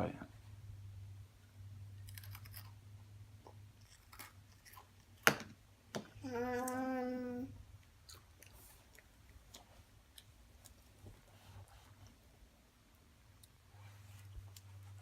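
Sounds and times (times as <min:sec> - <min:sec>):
person humming: 0:06.2 - 0:07.5.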